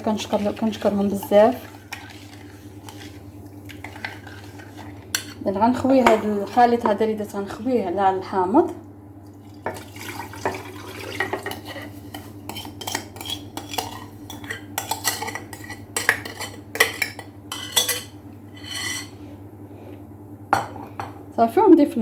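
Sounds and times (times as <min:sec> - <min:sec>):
scraping in bowl: 0:00.0 - 0:07.0, 0:09.7 - 0:19.2
brine pouring: 0:09.4 - 0:11.4.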